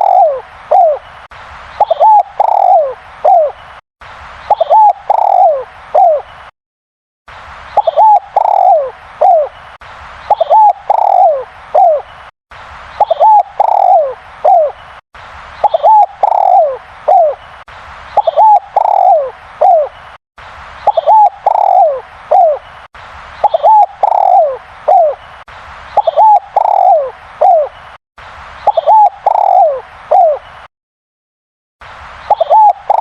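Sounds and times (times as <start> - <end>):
dove cooing: 0.0 - 1.0, 1.8 - 3.6, 4.5 - 6.3, 7.8 - 9.5, 10.3 - 12.0, 13.0 - 14.8, 15.6 - 17.4, 18.2 - 19.9, 20.9 - 22.6, 23.4 - 25.2, 26.0 - 27.7, 28.7 - 30.4, 32.3 - 33.0.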